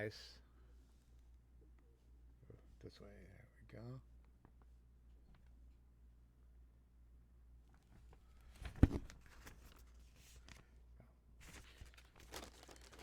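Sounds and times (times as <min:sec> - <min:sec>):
paper and cardboard rustling: 0:08.4 - 0:10.6, 0:11.4 - 0:13.0.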